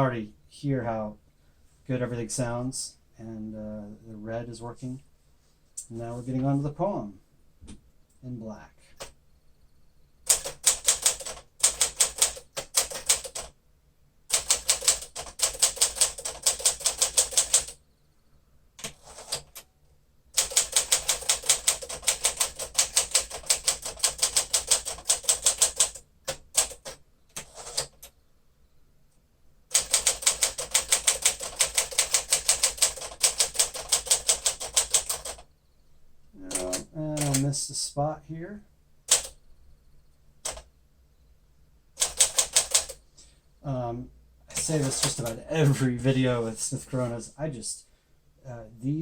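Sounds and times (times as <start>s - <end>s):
manual typewriter key strikes: 36.5s - 37.4s.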